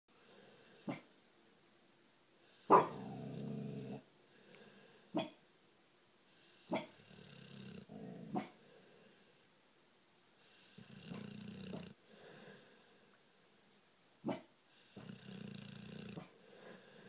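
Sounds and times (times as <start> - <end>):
dog snoring: 2.4 - 5.3, 6.3 - 9.3, 10.4 - 13.1, 14.3 - 17.0
short sharp snorts: 10.6 - 12.6.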